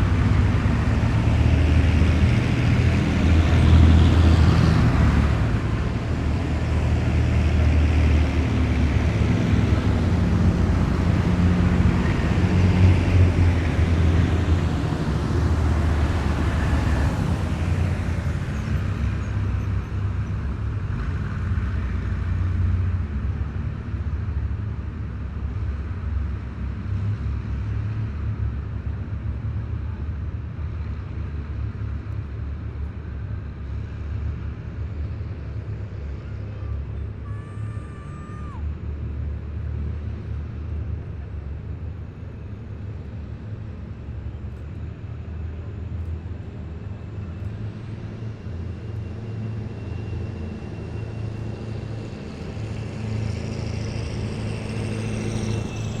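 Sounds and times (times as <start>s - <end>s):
heavy vehicles engine rumble: 0.0s - 56.0s.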